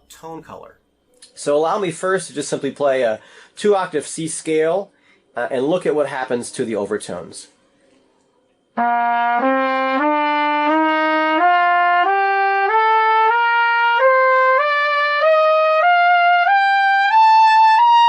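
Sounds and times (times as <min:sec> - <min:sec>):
trumpet playing a scale: 0:08.8 - 0:18.0.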